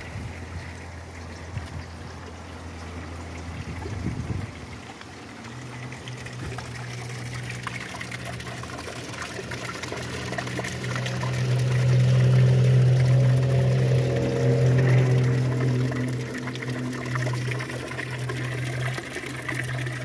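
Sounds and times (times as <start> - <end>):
steady low hum: 0.0 - 20.0
water trickling and dripping: 0.0 - 20.0
rain falling: 9.5 - 20.0.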